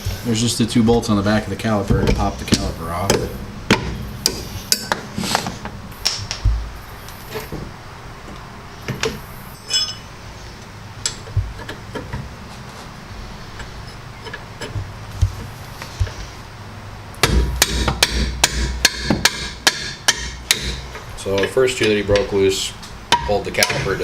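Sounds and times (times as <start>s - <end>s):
ringing metal clink: 9.5s - 10.1s.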